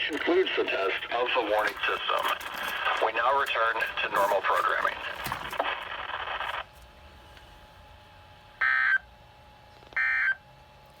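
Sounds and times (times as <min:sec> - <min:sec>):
radio broadcast audio: 0:00.0 - 0:06.7.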